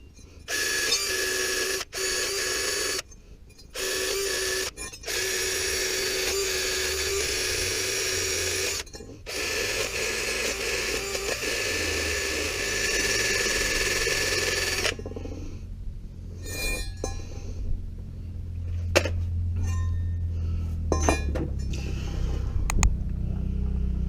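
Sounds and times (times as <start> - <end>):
steady low hum: 0.0 - 24.0
power tool running: 0.5 - 3.0, 3.7 - 15.5
metallic clinks of hand tools: 4.7 - 5.1, 8.7 - 9.3.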